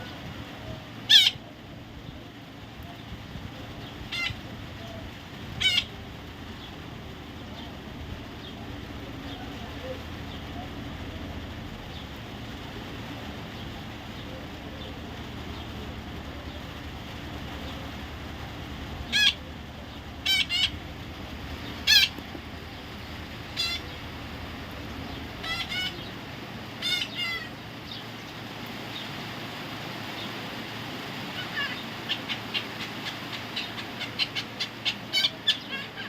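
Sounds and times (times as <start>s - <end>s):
steady background hum: 0.0s - 36.0s
parrot squawking: 1.0s - 1.5s, 3.8s - 4.6s, 5.5s - 6.1s, 19.0s - 21.0s, 21.6s - 24.2s, 25.0s - 28.0s, 31.3s - 36.0s.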